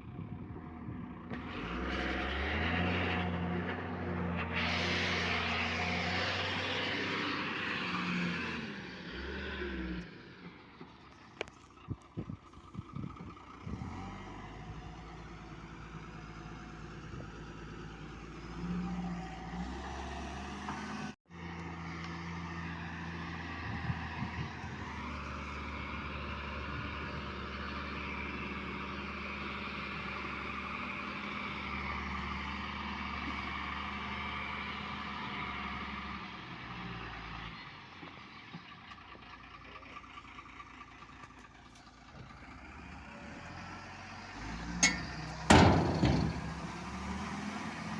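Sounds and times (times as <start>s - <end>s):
excavator diesel engine running: 0.0s - 19.1s, 20.6s - 47.9s
sharp knocks and clanks: 44.8s - 46.9s.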